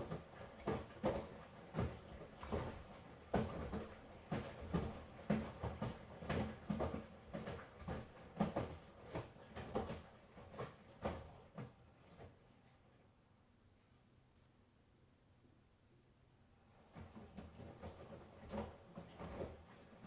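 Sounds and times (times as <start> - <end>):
laundry tumbling in washing machine: 0.0 - 12.7, 16.7 - 20.0.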